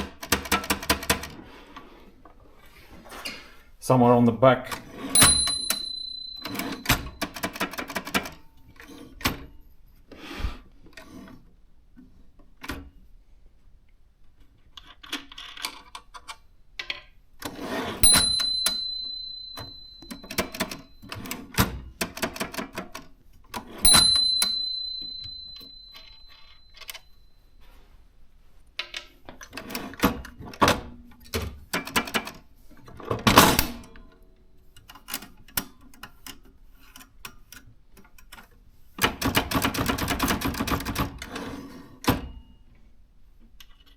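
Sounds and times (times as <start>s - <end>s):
typewriter clatter: 0.1s - 1.3s
typewriter bell ringing: 5.2s - 8.3s, 18.0s - 21.4s, 23.8s - 27.2s.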